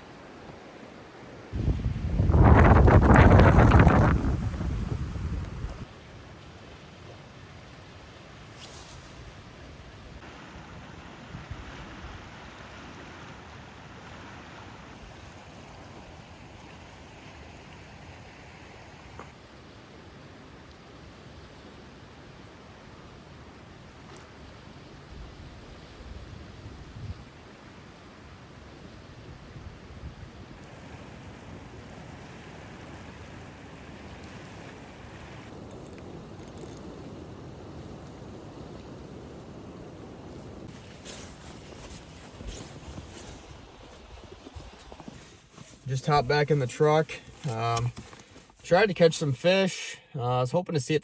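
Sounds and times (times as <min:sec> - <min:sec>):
strong gusty wind: 0:01.5 - 0:05.9, 0:25.0 - 0:27.4
wind buffeting microphone: 0:01.5 - 0:05.9, 0:25.0 - 0:27.4.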